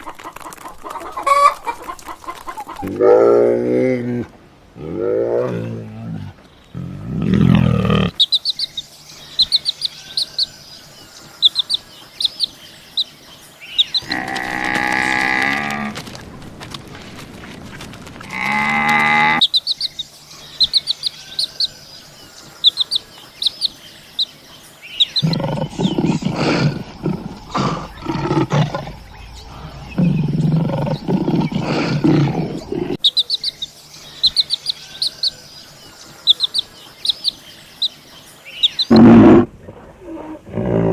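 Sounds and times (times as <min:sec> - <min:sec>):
bird chirping: 0:06.4 - 0:40.4
drawn-out pitched animal calls: 0:13.8 - 0:19.5, 0:25.1 - 0:33.1
rough rasping animal calls: 0:13.8 - 0:19.6, 0:25.1 - 0:33.0.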